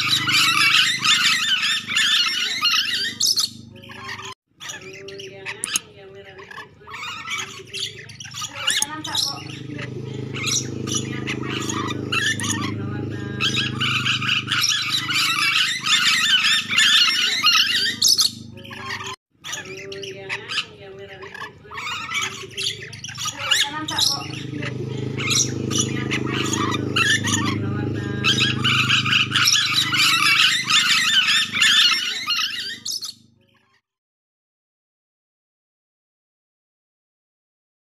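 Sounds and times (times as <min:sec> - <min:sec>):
parrots screeching: 0:00.0 - 0:33.8
low steady hum: 0:08.8 - 0:17.1, 0:23.6 - 0:31.9.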